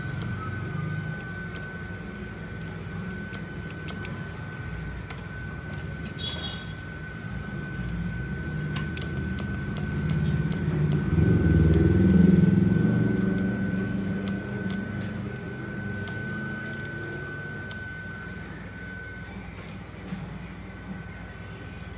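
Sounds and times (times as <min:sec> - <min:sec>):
low mechanical rumble: 0:00.0 - 0:21.9
steady high whine: 0:00.0 - 0:21.9
sharp clicks: 0:08.6 - 0:17.9.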